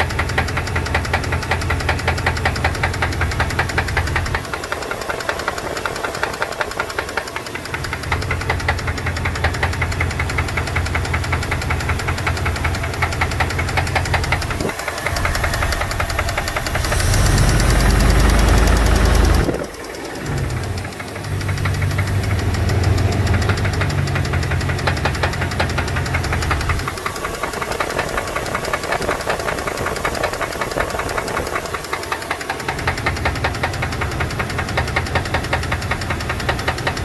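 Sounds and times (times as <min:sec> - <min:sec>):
engine idling: 0:00.0 - 0:37.0
fast ticking engine knock: 0:00.0 - 0:37.0.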